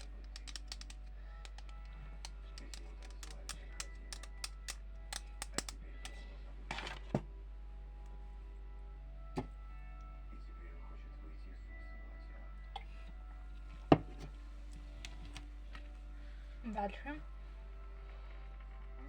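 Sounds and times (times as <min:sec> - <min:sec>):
light taps and clicks: 0:00.0 - 0:06.2
low background hum: 0:00.0 - 0:19.0.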